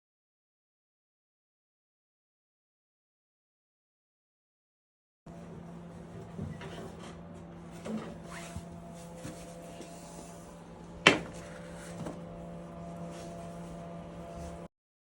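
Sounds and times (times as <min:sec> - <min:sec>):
steady hum: 0:05.3 - 0:14.7.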